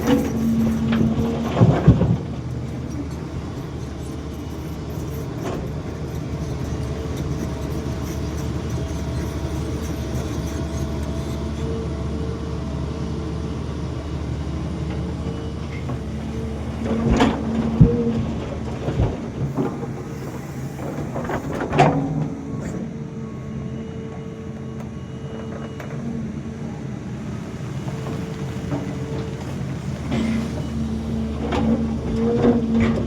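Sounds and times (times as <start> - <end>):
excavator diesel engine running: 0.0 - 33.0
thin whine: 15.3 - 25.0.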